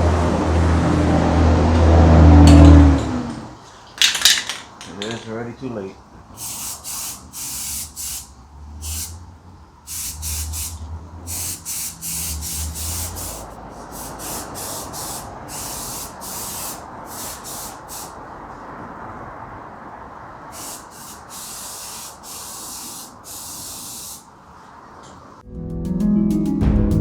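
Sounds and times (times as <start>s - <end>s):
aerosol spray can hissing: 6.4s - 9.2s, 9.9s - 18.2s, 20.5s - 24.3s.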